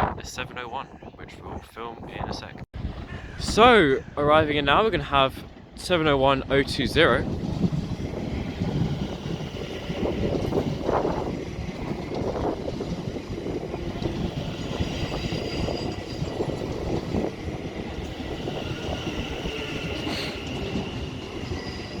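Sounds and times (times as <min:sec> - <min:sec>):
train wheels rumbling on track: 0:02.8 - 0:22.0.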